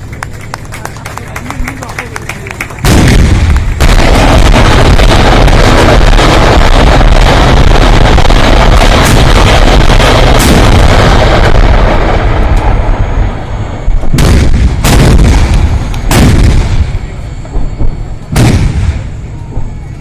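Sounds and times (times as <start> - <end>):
rolling rumble: 0.0 - 20.0
artillery guns firing: 2.8 - 12.6, 14.0 - 19.8.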